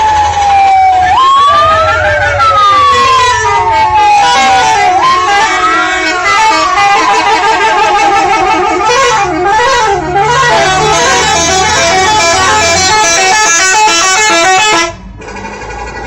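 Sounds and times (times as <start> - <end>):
electric trumpet horns playing tune: 3.5 - 15.0.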